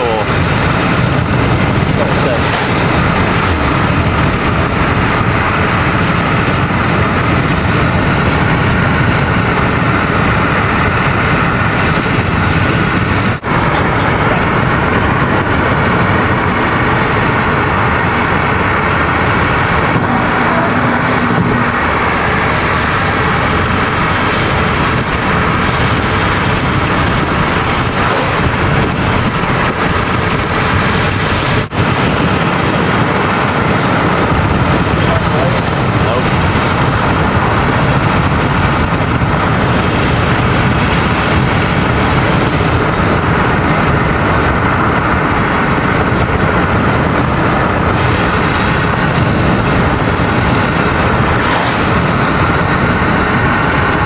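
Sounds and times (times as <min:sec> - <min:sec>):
car road and engine noise: 0:00.0 - 0:54.0.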